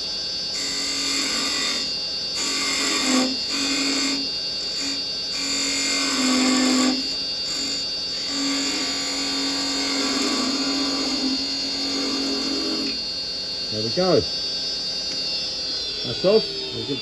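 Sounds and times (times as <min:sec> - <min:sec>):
wood lathe whine: 0:00.0 - 0:17.0
chisel cutting wood: 0:00.6 - 0:13.0.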